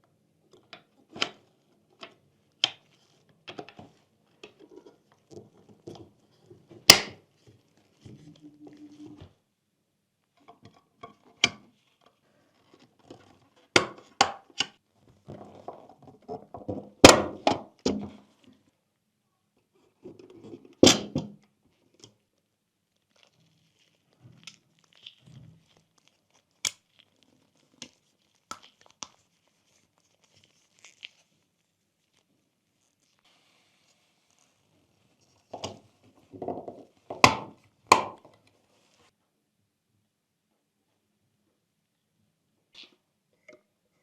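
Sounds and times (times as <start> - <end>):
light rustling and scraping: 27.0 - 37.1.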